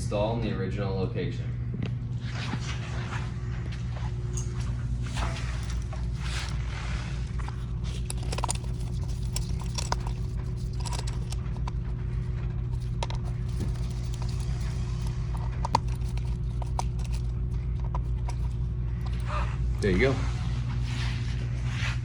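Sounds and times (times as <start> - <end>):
low electrical hum: 0.0 - 22.0
tools and metal parts clicking: 5.1 - 6.6, 7.3 - 20.0.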